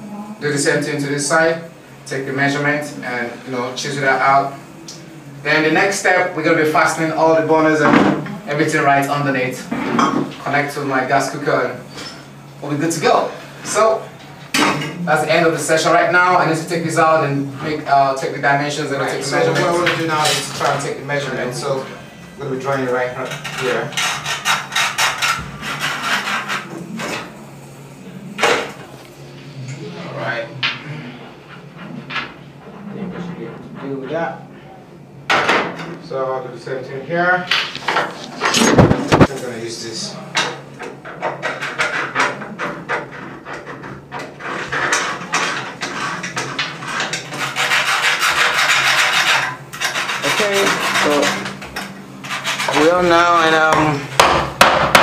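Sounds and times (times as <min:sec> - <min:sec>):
screwdriver scraping wood: 0:23.4 - 0:26.7, 0:41.4 - 0:51.6, 0:52.2 - 0:53.4
pen scratching on wood: 0:24.0 - 0:26.7, 0:47.1 - 0:51.5
loud knock: 0:53.7 - 0:55.0.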